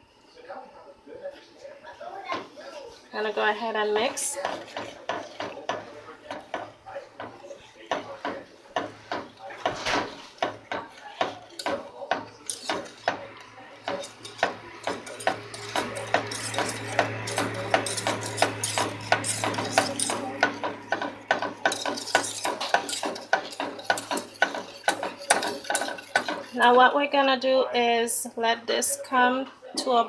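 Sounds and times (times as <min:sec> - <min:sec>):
utensil clinking against pan: 0:04.0 - 0:26.8.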